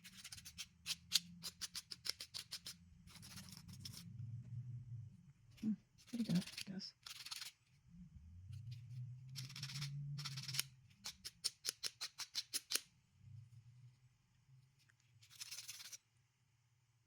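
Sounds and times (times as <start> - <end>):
emery board filing plastic: 9.3 - 12.9, 15.2 - 16.0.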